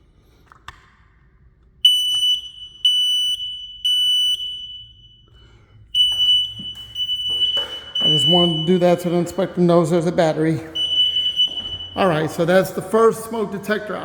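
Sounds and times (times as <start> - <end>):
alarm detector high beeps: 1.9 - 5.4, 6.0 - 13.4.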